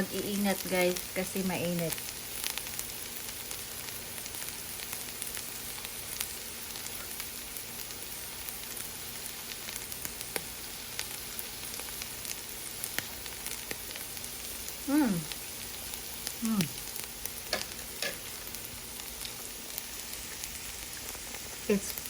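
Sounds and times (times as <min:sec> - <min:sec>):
food sizzling in a pan: 0:00.0 - 0:22.0
small pops and crackles: 0:08.7 - 0:14.3.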